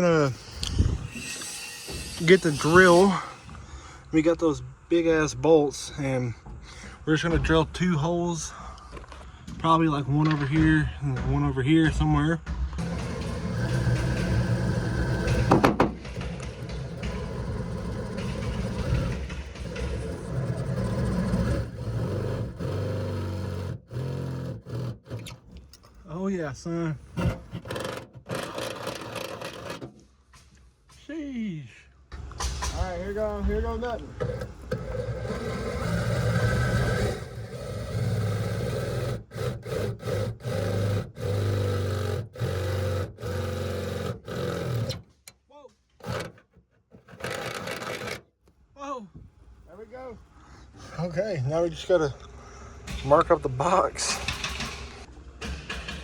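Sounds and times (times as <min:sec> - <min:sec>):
power drill boring through metal: 0:00.0 - 0:04.1, 0:12.8 - 0:25.9, 0:27.1 - 0:30.0, 0:33.9 - 0:45.1, 0:46.0 - 0:46.4, 0:47.0 - 0:48.2
loud clatter: 0:12.4 - 0:25.7, 0:27.1 - 0:30.0, 0:32.3 - 0:45.1.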